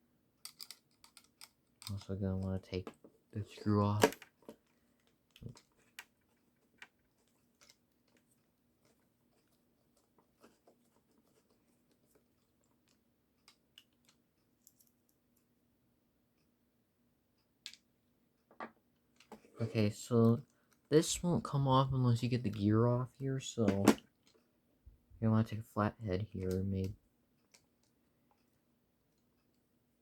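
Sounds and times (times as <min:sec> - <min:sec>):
screwdriver clicks and taps: 0:00.4 - 0:02.0.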